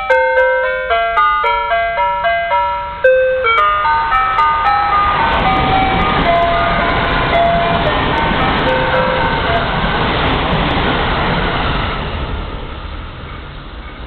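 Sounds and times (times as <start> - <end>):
station approach chime: 0.0 - 10.1
train passing with rushing rumble: 0.0 - 14.0.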